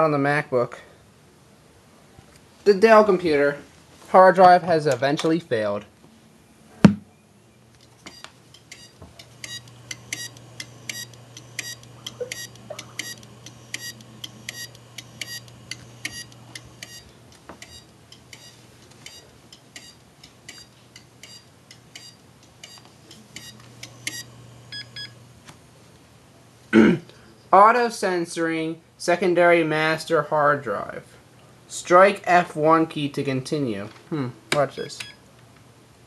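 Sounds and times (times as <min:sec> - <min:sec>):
low steady hum: 0:05.8 - 0:27.6
loud knock: 0:06.9 - 0:07.1
hard drive clicking: 0:08.1 - 0:25.2.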